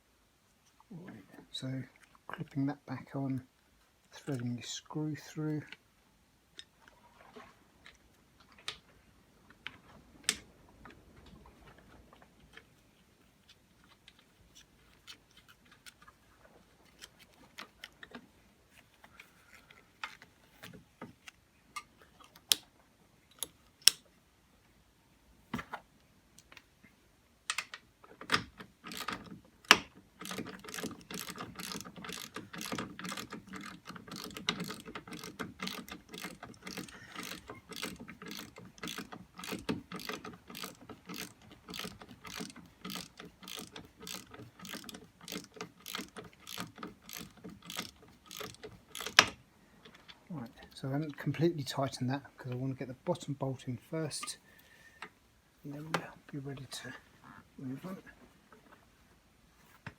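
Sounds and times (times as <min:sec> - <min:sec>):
ratchet wrench clicking: 0:28.9 - 0:29.2, 0:30.2 - 0:49.3.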